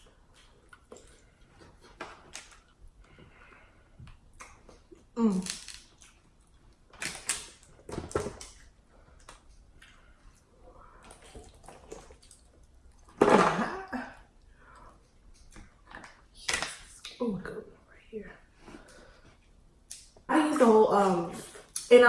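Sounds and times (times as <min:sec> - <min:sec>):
slurping and chewing: 0:08.4 - 0:13.2.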